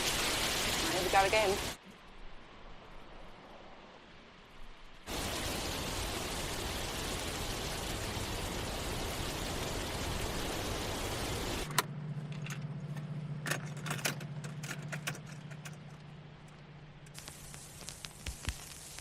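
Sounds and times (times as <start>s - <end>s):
rain-like hiss: 0.0s - 11.7s, 17.0s - 19.0s
low car hum: 5.1s - 18.2s.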